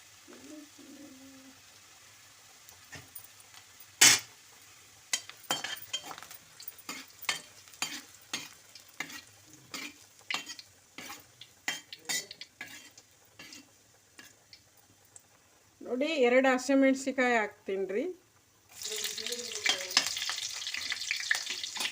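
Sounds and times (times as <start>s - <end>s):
faint sizzle of frying: 0.0s - 21.9s
spatula scraping in a pan: 4.0s - 14.5s, 18.9s - 21.9s.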